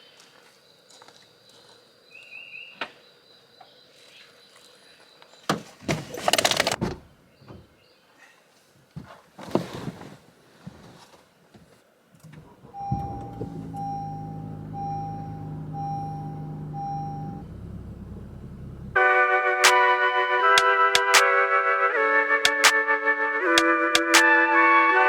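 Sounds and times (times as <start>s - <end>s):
rustling and handling noise: 5.8s - 6.8s, 8.9s - 11.8s
car engine running: 12.4s - 19.0s.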